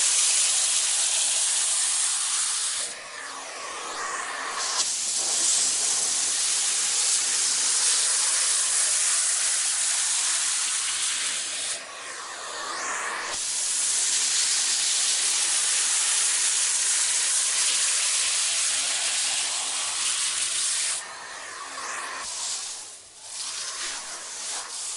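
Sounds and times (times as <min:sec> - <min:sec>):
vacuum cleaner running: 0:00.0 - 0:24.9.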